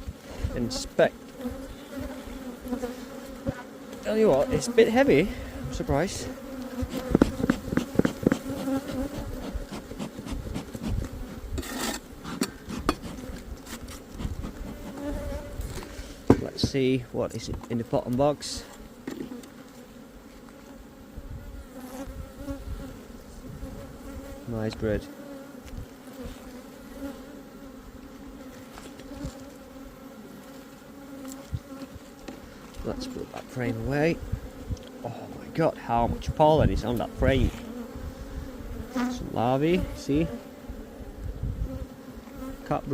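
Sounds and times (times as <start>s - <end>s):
honeybees buzzing: 0.0s - 42.9s
hive boxes knocking: 6.6s - 11.1s, 14.2s - 17.8s
rasping scrape: 6.8s - 16.3s.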